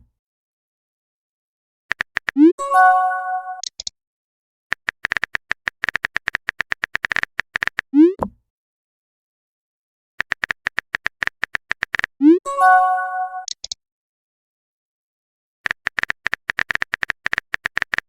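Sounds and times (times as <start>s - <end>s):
keyboard typing clicks: 1.9s - 2.5s, 3.6s - 3.9s, 4.7s - 8.3s, 10.2s - 12.2s, 13.4s - 13.8s, 15.6s - 18.0s.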